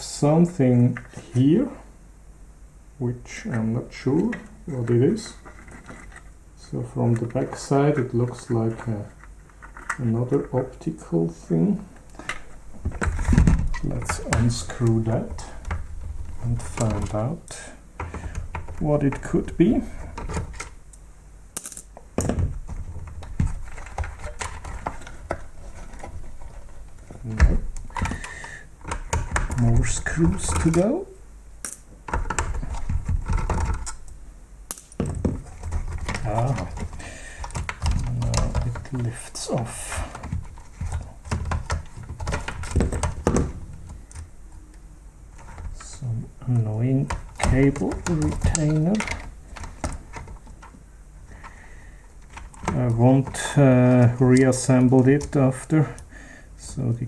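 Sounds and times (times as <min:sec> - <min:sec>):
plastic parts knocking and clicking: 0:12.0 - 0:17.3, 0:18.0 - 0:20.8, 0:21.6 - 0:30.9, 0:31.6 - 0:44.3, 0:45.3 - 0:45.9, 0:46.5 - 0:51.6, 0:52.2 - 0:56.1.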